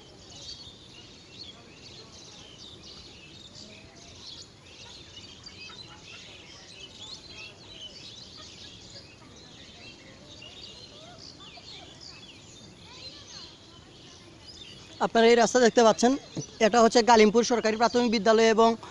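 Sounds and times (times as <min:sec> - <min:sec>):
small birds chirping: 0:00.0 - 0:18.9.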